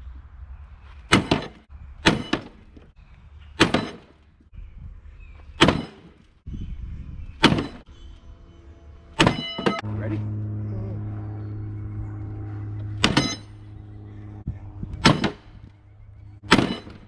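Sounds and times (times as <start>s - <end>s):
sledgehammer striking steel pipe: 1.1s - 2.6s, 3.6s - 4.1s, 9.2s - 9.8s, 13.0s - 13.6s, 15.0s - 15.5s, 16.4s - 17.0s.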